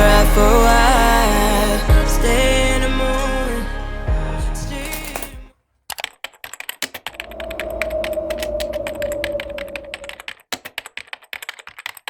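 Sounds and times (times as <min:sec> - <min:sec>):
keyboard key clicks: 0:08.3 - 0:12.0.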